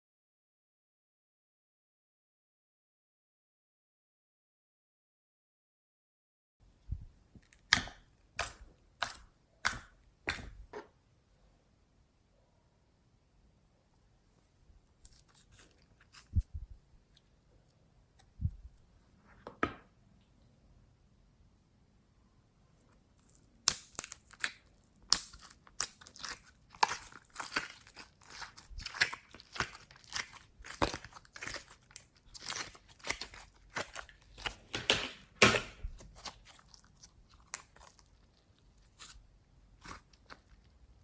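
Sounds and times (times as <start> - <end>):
slime squishing and crackling: 23.1 - 41.0.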